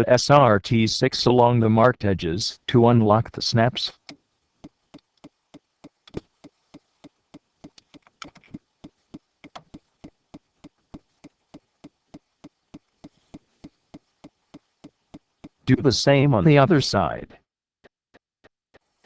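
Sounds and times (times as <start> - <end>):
louder irregular clicks: 4.0 - 15.7
clock ticking: 4.0 - 16.4.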